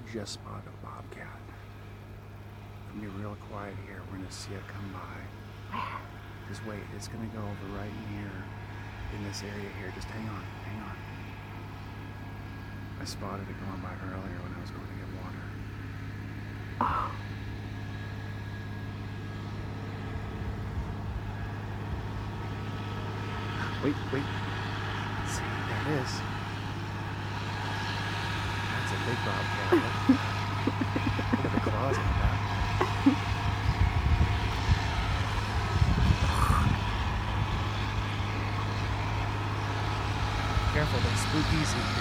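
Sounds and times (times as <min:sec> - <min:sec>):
engine running with low hum: 0:00.0 - 0:42.0
gusts of low rumble: 0:18.2 - 0:29.1, 0:29.9 - 0:41.1.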